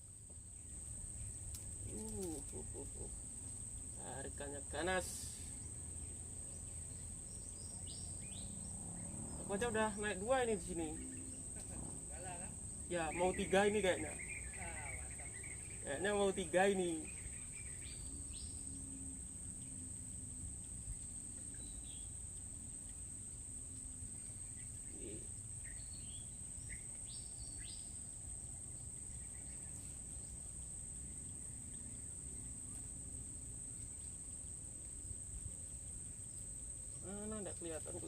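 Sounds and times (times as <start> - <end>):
insects shrilling: 0.0 - 38.0
low outdoor hum: 0.0 - 38.0
bird chirps: 3.8 - 19.8, 20.6 - 23.0, 24.1 - 28.1.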